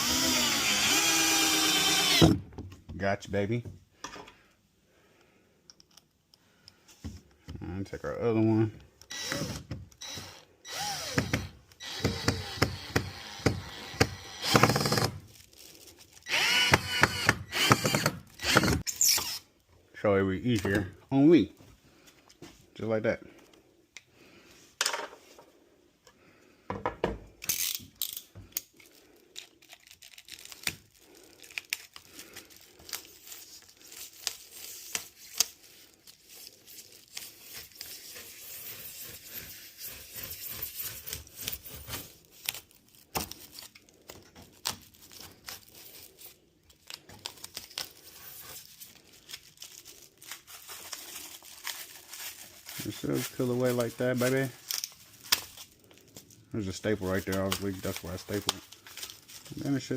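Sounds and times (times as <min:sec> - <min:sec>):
insulation tearing and rustling: 0:28.7 - 0:59.9.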